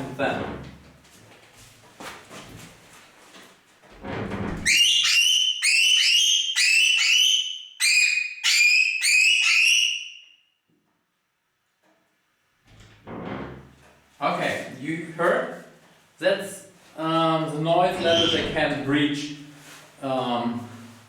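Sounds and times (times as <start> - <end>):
parrots calling loudly: 4.7 - 10.2, 17.9 - 18.6.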